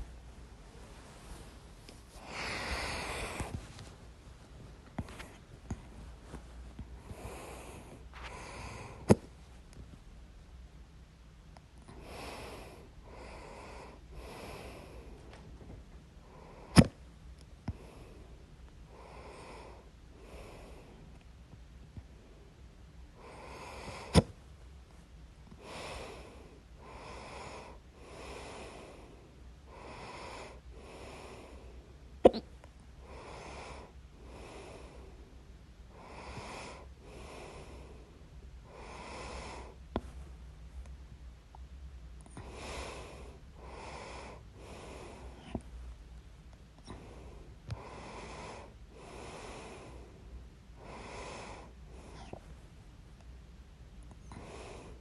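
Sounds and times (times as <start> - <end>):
person breathing: 0.0 - 4.0, 5.0 - 9.4, 11.9 - 15.4, 17.7 - 21.2, 23.2 - 24.4, 25.5 - 32.0, 33.0 - 40.3, 42.2 - 45.8, 46.8 - 52.6, 54.2 - 55.0
person hiccuping: 32.3 - 32.5.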